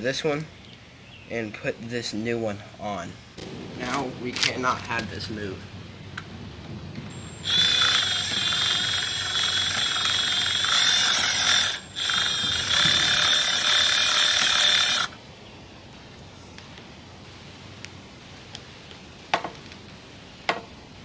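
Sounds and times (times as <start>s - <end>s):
handheld power tool whining: 7.1s - 15.2s.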